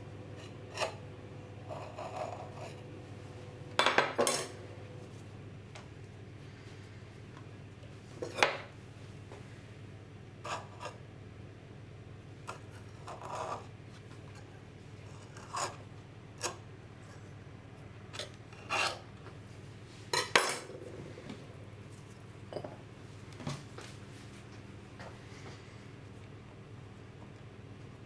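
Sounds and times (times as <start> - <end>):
metal utensil scraping a pan: 0.3 - 3.0.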